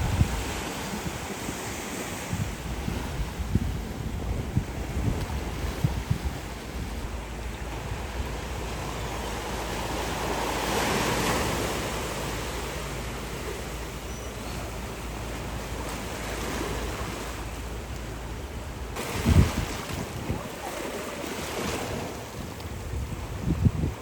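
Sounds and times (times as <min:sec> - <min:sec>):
surf breaking on rocks: 0:07.9 - 0:13.7, 0:18.9 - 0:22.6.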